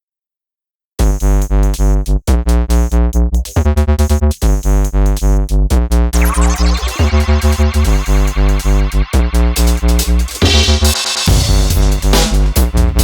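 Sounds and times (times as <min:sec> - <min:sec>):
rising synth sweep: 0:06.2 - 0:11.9
electronic music with synthesizer: 0:06.2 - 0:13.0.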